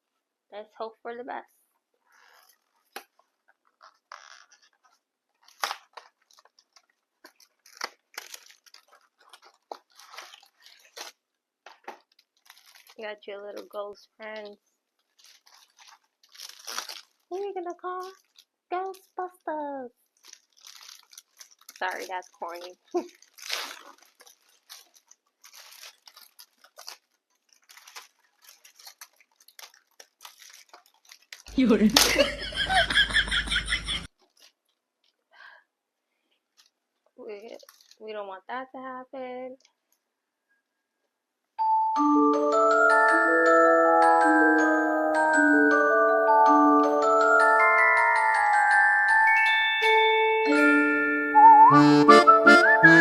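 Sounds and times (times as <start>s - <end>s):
crinkly rustles: 2.0s - 32.2s, 34.0s - 35.4s, 36.2s - 38.2s.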